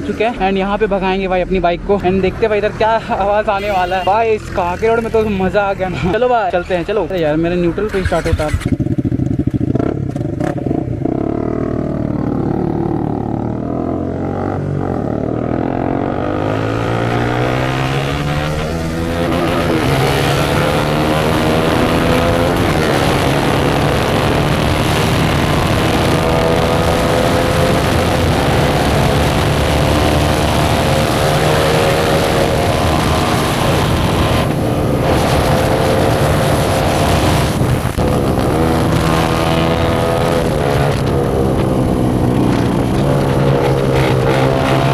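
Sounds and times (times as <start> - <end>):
motorcycle engine revving: 3.8 - 44.9
wind rushing: 12.4 - 44.9.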